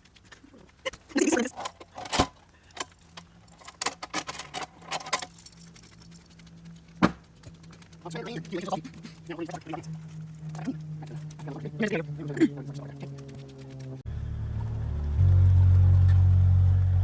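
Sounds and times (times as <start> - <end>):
clicks and light clatter: 0.0 - 11.8.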